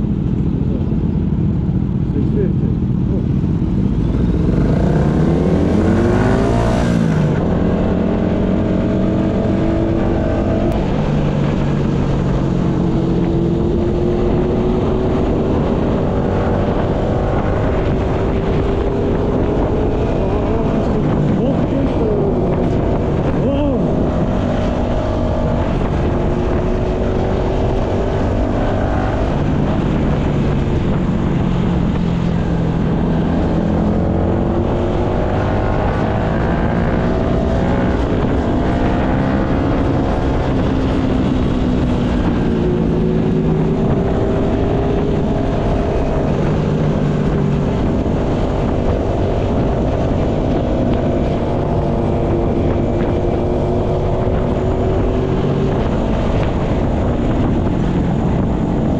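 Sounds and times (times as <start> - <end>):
wind noise: 0.0 - 58.9
motorcycle engine revving: 2.2 - 58.9.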